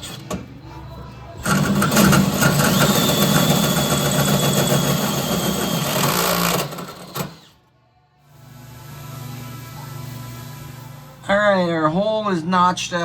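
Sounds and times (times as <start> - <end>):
hole saw drill cutting metal: 1.5 - 7.6.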